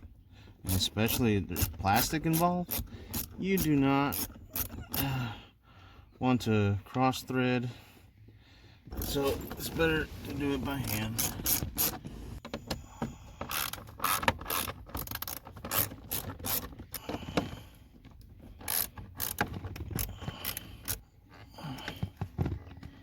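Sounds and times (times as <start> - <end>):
hand ratchet clicking: 0.7 - 5.1, 10.9 - 12.0, 13.4 - 17.1, 18.6 - 21.0.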